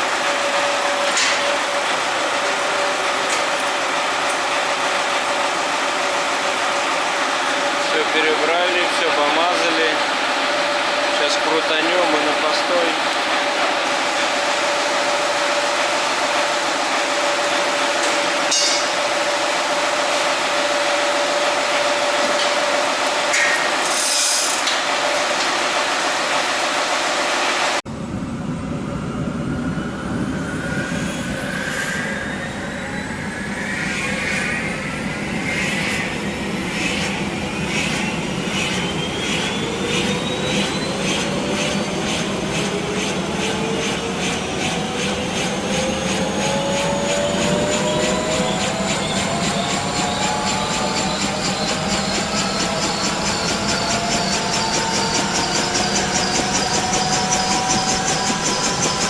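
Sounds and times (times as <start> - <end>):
rotor whines over beating rhythm: 28.0 - 59.0.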